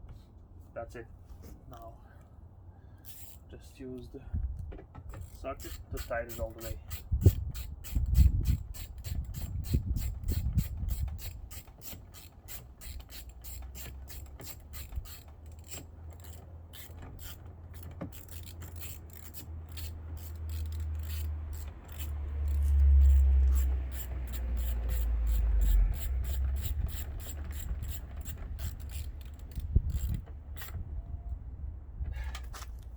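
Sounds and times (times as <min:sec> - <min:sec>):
ratchet wrench clicking: 0:03.0 - 0:03.4, 0:05.2 - 0:30.8.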